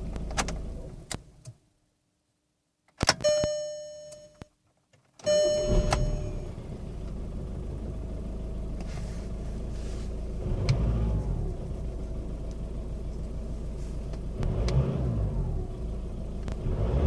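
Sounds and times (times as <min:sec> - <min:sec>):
engine revving: 0:05.3 - 0:08.0, 0:10.4 - 0:11.8, 0:14.4 - 0:17.0
diesel engine idling rough: 0:05.6 - 0:14.4.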